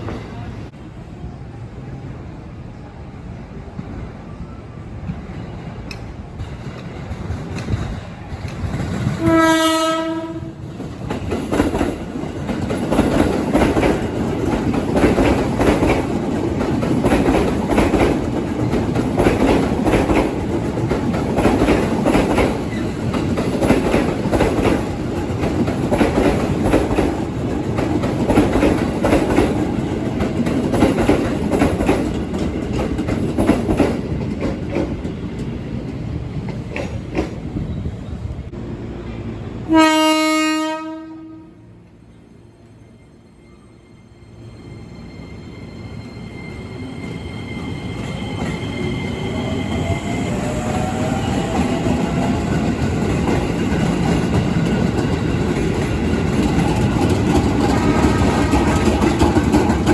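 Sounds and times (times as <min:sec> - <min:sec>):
train rumbling past: 0:00.0 - 0:59.9
train horn blast: 0:09.2 - 0:10.6, 0:39.7 - 0:41.8, 0:57.7 - 0:59.0
wheels clattering over rail joints: 0:51.6 - 0:59.9.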